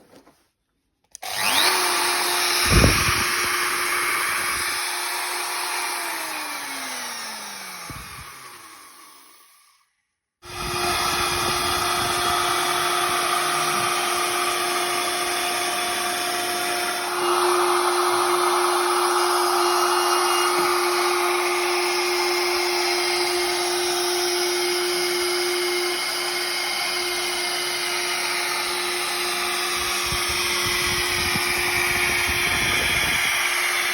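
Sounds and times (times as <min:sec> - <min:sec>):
router motor whining: 0:01.1 - 0:09.8, 0:10.4 - 0:33.9.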